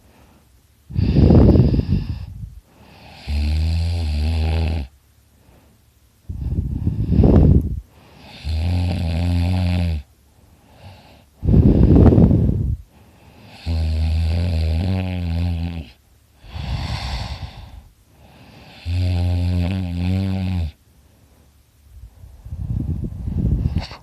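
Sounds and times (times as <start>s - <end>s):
man snoring loudly: 2.9s - 4.9s, 8.2s - 10.1s, 13.5s - 20.8s.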